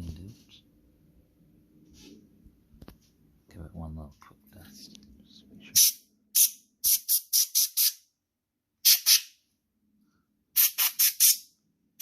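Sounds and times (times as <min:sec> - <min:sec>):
compressed air duster blasts: 0:05.8 - 0:08.0, 0:08.8 - 0:09.4, 0:10.6 - 0:11.5.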